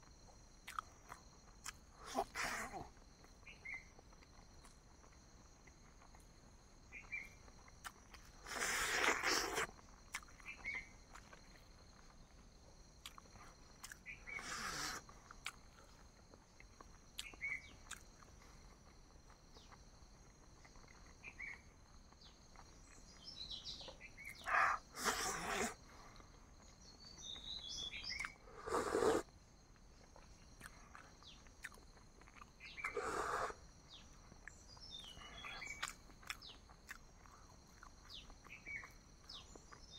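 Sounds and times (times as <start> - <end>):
high insect drone: 0.0 - 39.9
birds chirping: 21.3 - 25.8, 26.6 - 29.2, 32.6 - 36.8.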